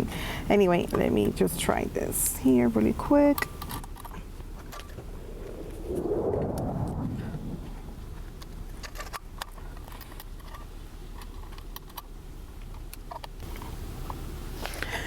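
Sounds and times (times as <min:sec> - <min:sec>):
low background rumble: 0:00.0 - 0:15.0
radio gear clicks and rattles: 0:08.2 - 0:14.8.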